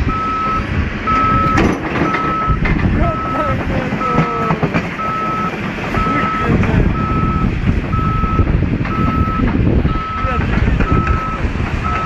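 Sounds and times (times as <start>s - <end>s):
low engine rumble: 0.0s - 12.0s
reversing alarm beeping: 0.0s - 12.0s.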